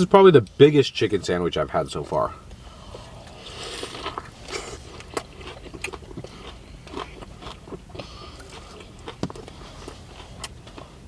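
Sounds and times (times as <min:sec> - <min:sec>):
chewing crispy chicken sandwich: 0:02.9 - 0:11.0.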